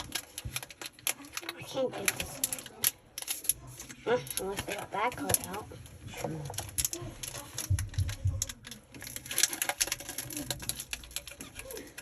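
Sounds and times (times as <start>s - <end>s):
foil wrapper crinkling and tearing: 6.4s - 12.0s.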